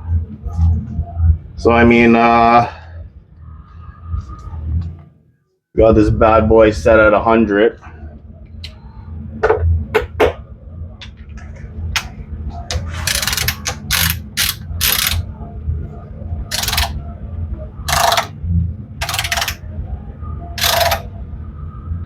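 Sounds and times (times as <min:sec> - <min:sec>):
torque wrench ratchet clicking: 0:13.0 - 0:15.2, 0:16.5 - 0:16.9, 0:17.9 - 0:18.3, 0:19.0 - 0:19.6, 0:20.6 - 0:21.1.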